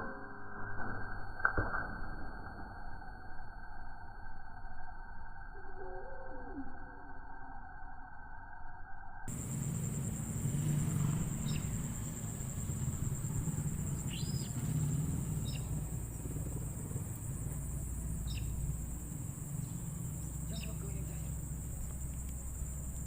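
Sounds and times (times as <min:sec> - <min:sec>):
insect chorus: 0:00.2 - 0:23.0
low rumble: 0:09.3 - 0:23.0.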